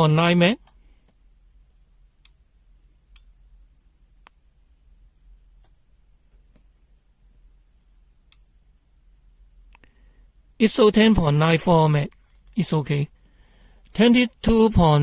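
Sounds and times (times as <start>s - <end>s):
faint clicks of test probes: 9.7s - 10.0s.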